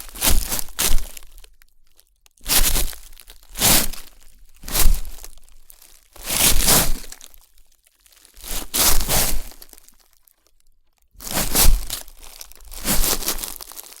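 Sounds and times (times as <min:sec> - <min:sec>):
footsteps crunching dry leaves: 0:00.0 - 0:01.6, 0:02.4 - 0:10.1, 0:11.2 - 0:14.0.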